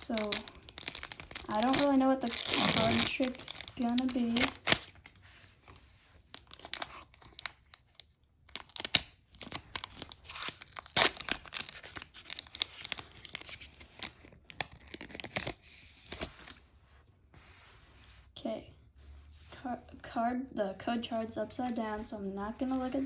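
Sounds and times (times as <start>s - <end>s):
foil wrapper tearing and crinkling: 0.0s - 5.2s, 6.3s - 16.6s.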